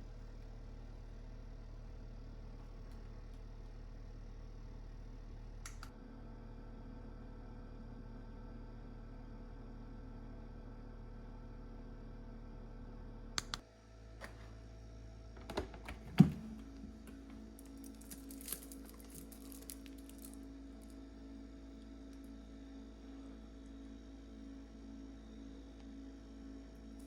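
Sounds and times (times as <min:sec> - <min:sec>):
sharp clicks and knocks: 0:15.4 - 0:20.3.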